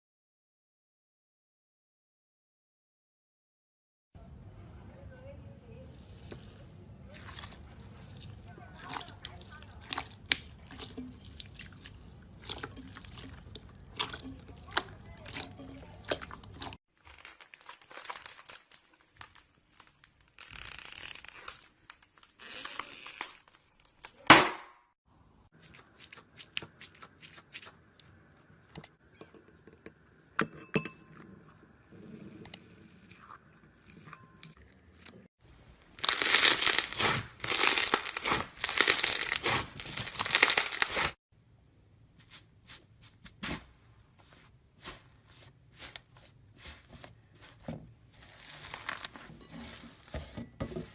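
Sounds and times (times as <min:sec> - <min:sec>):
slime crackling and popping: 0:17.0 - 0:24.3, 0:35.9 - 0:41.2
sharp loud pop: 0:24.3 - 0:24.8.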